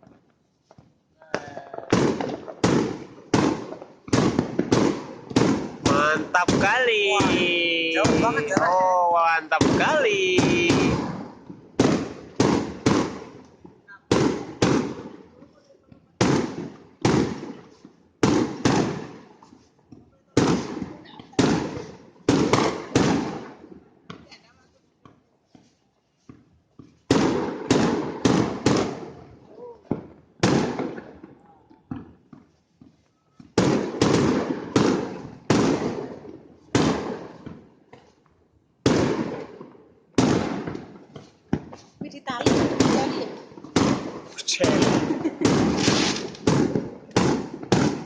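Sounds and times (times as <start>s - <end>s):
fireworks shells bursting with booms: 1.2s - 15.4s, 16.2s - 19.6s, 20.4s - 23.8s, 27.1s - 31.3s, 33.4s - 37.6s, 38.8s - 48.0s.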